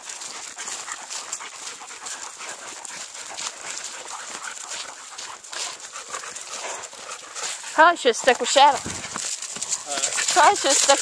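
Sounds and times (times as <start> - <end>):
dogs panting: 0.0 - 11.0
footsteps and paws crunching: 0.0 - 11.0.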